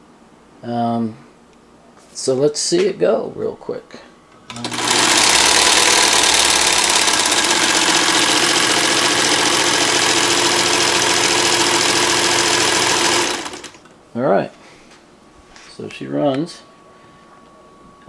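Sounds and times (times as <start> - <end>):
electric motor hum: 4.5 - 13.8
sewing machine rattling: 4.5 - 13.8.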